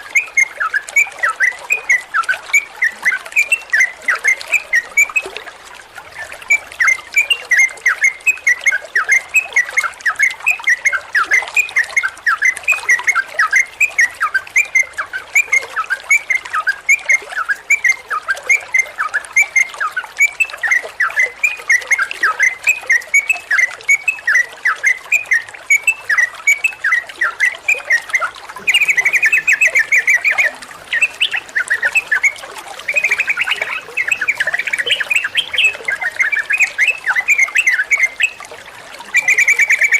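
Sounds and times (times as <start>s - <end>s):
bird singing sharp repeated notes: 16.2s - 38.5s, 39.1s - 39.9s
bird rattling trills: 28.5s - 38.4s.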